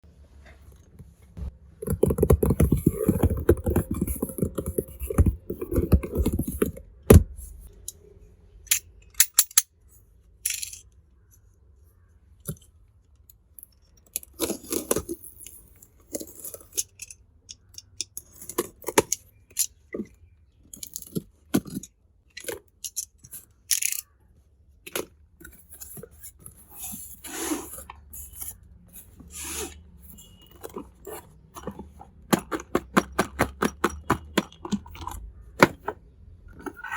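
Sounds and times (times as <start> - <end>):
light clicks of toy pieces: 10.4 - 11.0, 20.6 - 24.2.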